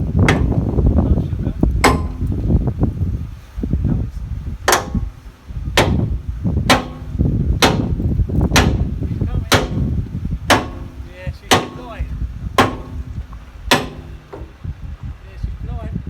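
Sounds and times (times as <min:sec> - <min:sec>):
heavy hammer striking metal: 0:00.2 - 0:01.0, 0:01.8 - 0:02.6, 0:04.7 - 0:14.7.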